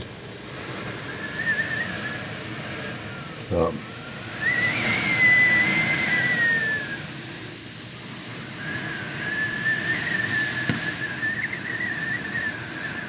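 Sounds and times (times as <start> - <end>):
strong wind gusting: 0.0 - 13.0
high thin whistle: 8.6 - 13.0.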